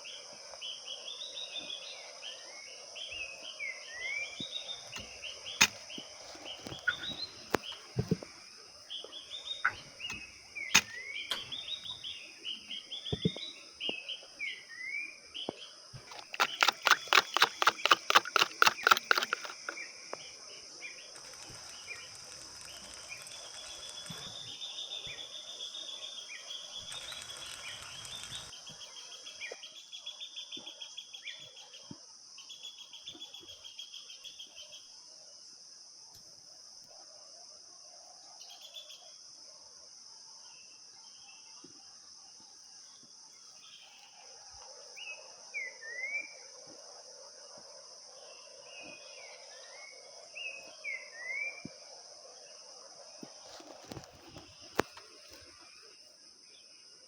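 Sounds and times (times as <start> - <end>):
insect drone: 0.0 - 57.0
small birds chirping: 0.7 - 30.1
rapid sharp taps: 16.0 - 19.8.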